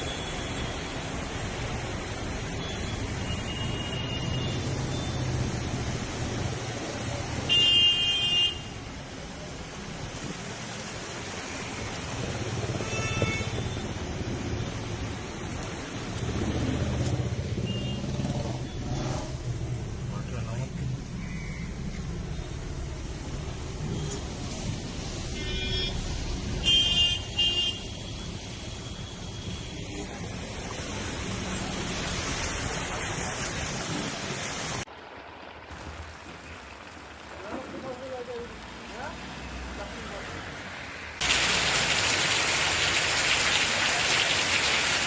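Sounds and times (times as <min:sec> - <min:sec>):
rain and wind hiss: 0:00.0 - 0:07.6, 0:08.5 - 0:17.4, 0:22.0 - 0:25.4, 0:29.5 - 0:45.0.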